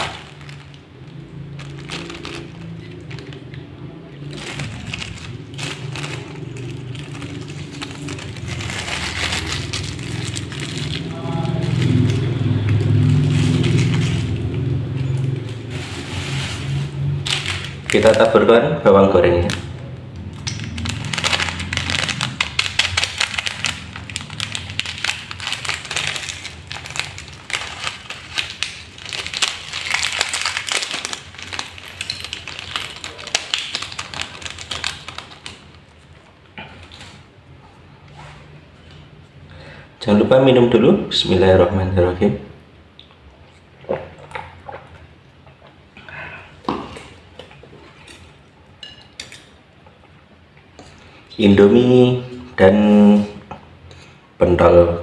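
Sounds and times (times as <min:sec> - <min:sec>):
plastic packet crinkling: 0:00.0 - 0:37.2
chewing mouth noises: 0:42.9 - 0:48.8.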